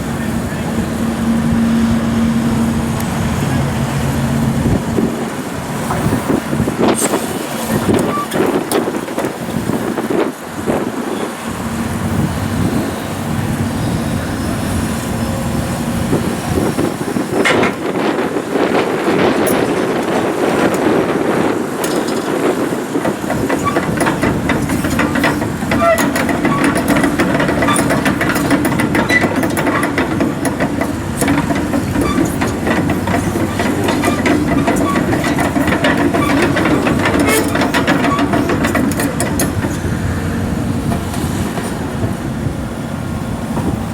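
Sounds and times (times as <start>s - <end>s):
excavator engine drone: 0.0s - 43.9s
metal clanks rattling: 17.3s - 42.2s.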